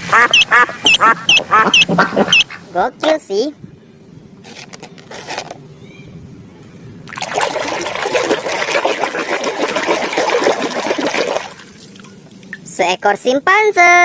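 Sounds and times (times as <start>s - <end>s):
water running and splashing: 7.1s - 12.7s.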